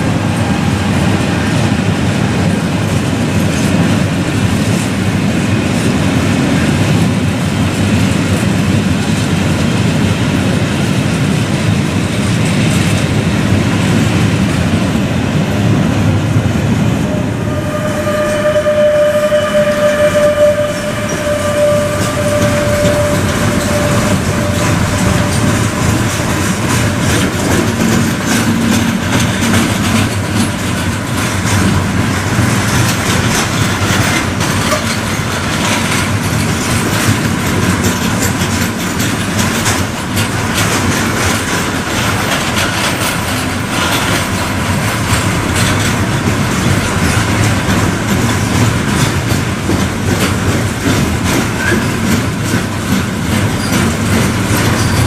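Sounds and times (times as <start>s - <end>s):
freight train clattering: 0.0s - 55.0s
steady high tone: 17.1s - 26.5s.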